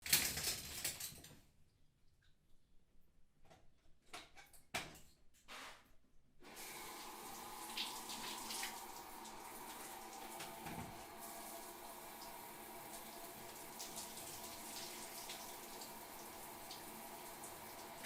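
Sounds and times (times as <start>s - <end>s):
shower water spattering: 6.5s - 18.0s.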